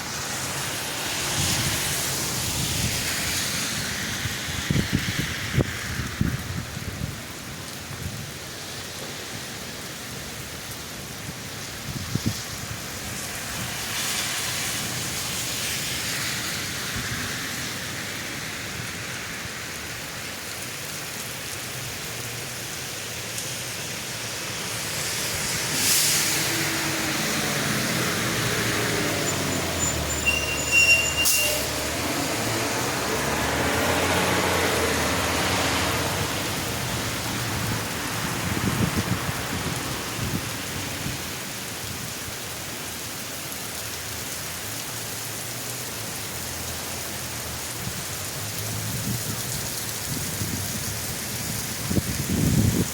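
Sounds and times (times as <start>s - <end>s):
heavy rain falling: 0.0s - 52.9s
passing vehicle engine rumble: 24.0s - 41.0s
brief high squeal: 29.2s - 31.8s.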